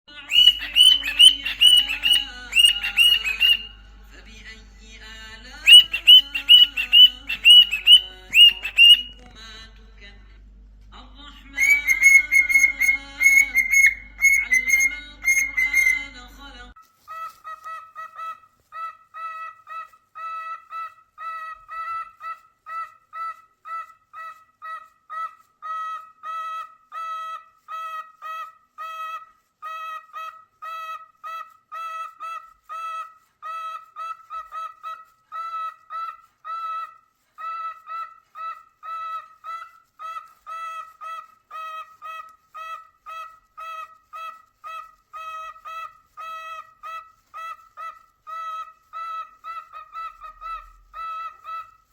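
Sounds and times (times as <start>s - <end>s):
bird calling: 0.2s - 3.8s, 5.6s - 9.3s, 11.5s - 16.1s.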